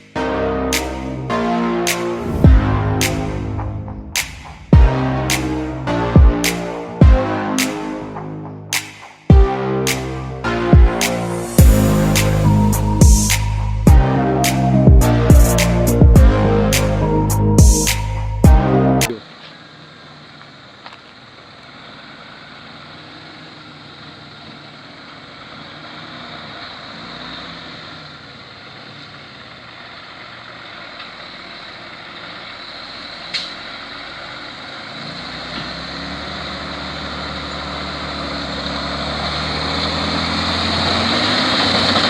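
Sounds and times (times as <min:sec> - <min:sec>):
heavy truck engine running: 0:02.0 - 0:07.3, 0:10.7 - 0:42.0.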